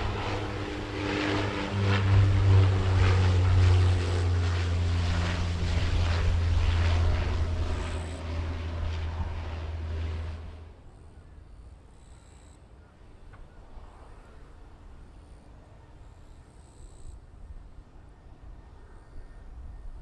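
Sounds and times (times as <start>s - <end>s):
low steady rumble: 0.0s - 11.4s
aircraft passing: 0.0s - 20.0s.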